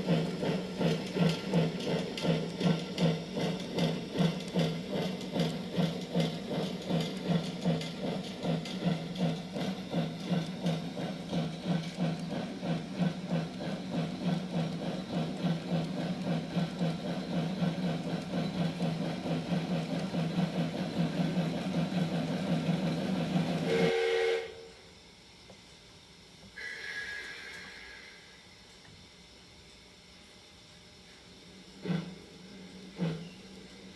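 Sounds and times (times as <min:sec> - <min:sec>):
steam locomotive chuffing: 0:00.0 - 0:24.7, 0:31.5 - 0:33.9
train whistle blast: 0:23.6 - 0:24.8, 0:26.6 - 0:28.4
steam hiss: 0:26.6 - 0:28.5.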